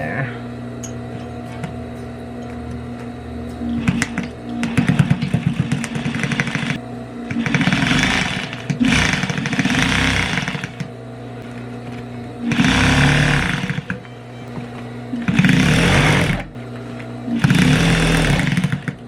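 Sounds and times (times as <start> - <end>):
electric sewing machine stitching: 2.8 - 19.0
needle rapid clicking: 3.8 - 19.0.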